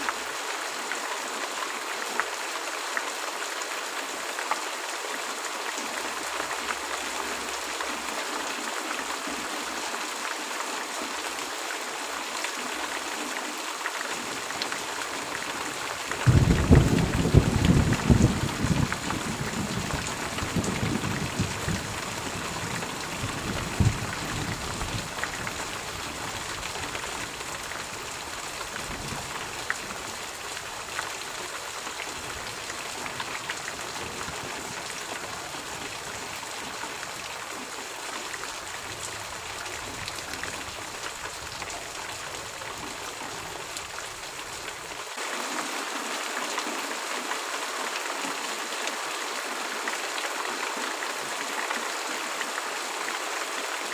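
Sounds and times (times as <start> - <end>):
rain hissing: 14.3 - 36.4
low thunder rumble: 16.2 - 22.2.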